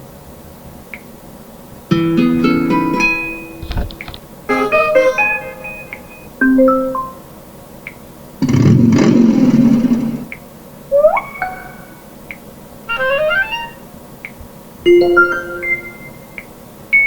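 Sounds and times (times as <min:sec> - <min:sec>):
phone notification chimes: 0:02.9 - 0:07.2, 0:14.9 - 0:16.3
soft thump: 0:03.6 - 0:04.2.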